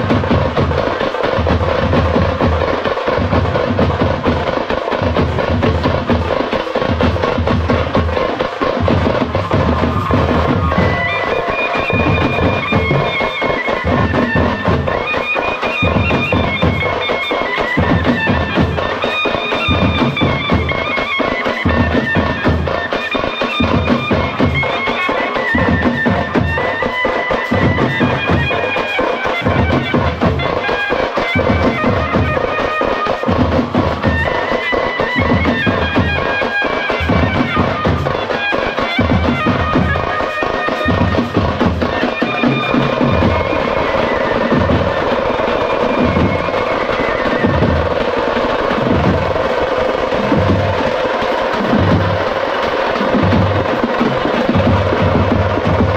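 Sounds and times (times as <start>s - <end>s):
hand drums beating: 0.0s - 55.9s
loud double-reed pipe melody: 0.0s - 55.9s.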